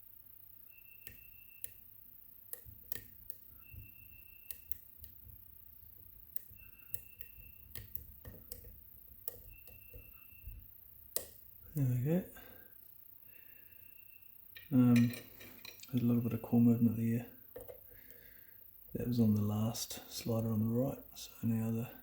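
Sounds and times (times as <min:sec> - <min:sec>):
lock pick clicks and ticks: 0:02.5 - 0:03.4, 0:11.2 - 0:11.4.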